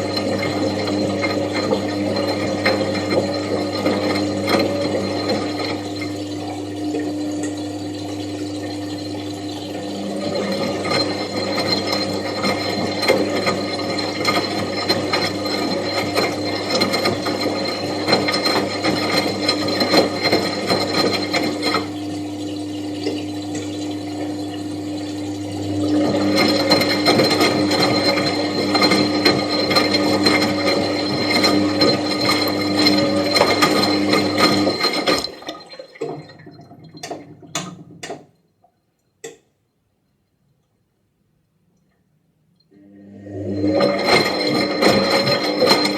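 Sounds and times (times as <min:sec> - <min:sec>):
washing machine motor hum: 0:00.0 - 0:38.4, 0:42.7 - 0:45.9.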